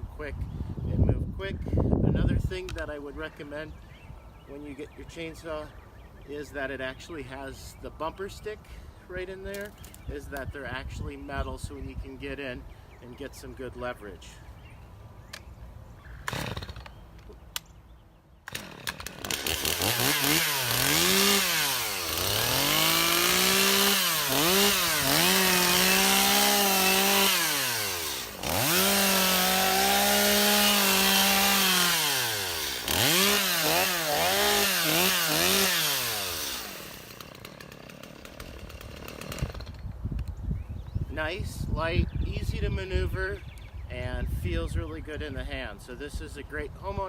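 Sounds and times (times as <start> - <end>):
chainsaw cutting wood: 16.2 - 17.7, 18.4 - 40.0.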